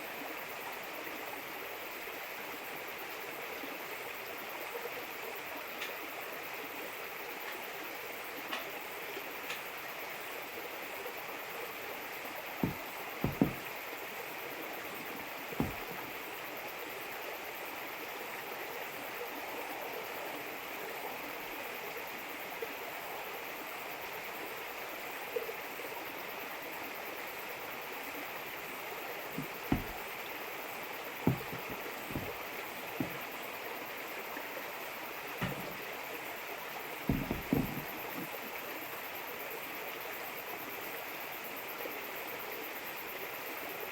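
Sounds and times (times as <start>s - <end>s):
sharp knocks: 12.6s - 13.8s, 15.6s - 16.1s, 29.4s - 30.1s, 31.3s - 32.4s, 33.0s - 33.2s, 35.4s - 35.9s, 37.1s - 38.3s.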